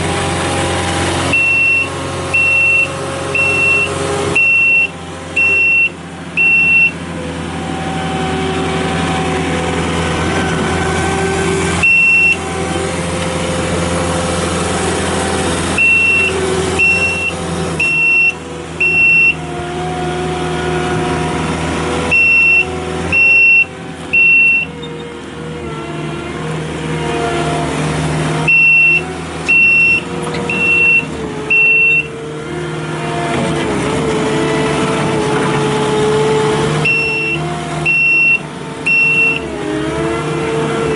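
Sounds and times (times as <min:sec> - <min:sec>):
diesel engine running: 0:00.0 - 0:40.9
backup alarm beeps: 0:01.4 - 0:07.0, 0:11.8 - 0:12.4, 0:15.8 - 0:19.4, 0:22.1 - 0:24.8, 0:28.5 - 0:32.1, 0:36.8 - 0:39.4.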